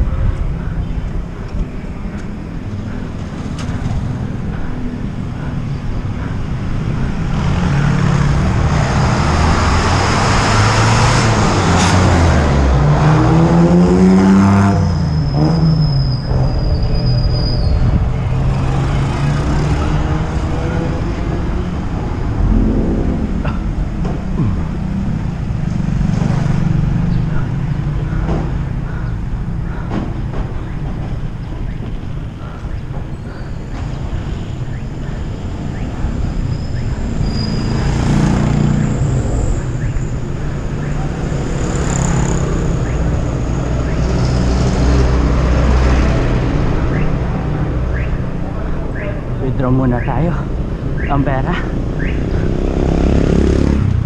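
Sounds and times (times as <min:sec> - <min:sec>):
road traffic: 0:00.0 - 0:54.0
vehicle engine passing close: 0:18.2 - 0:27.1
steady low rumble: 0:21.8 - 0:25.5.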